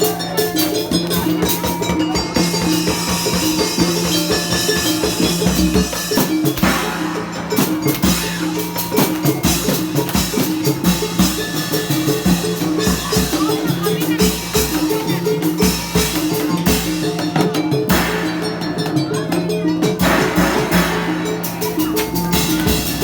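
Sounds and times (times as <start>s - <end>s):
repeating melodic figure: 0.0s - 17.3s
drums and percussion rhythm: 0.0s - 23.0s.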